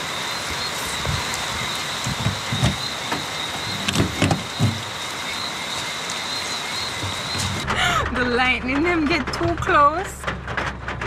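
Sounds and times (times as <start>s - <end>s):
insects trilling: 0.0s - 7.7s.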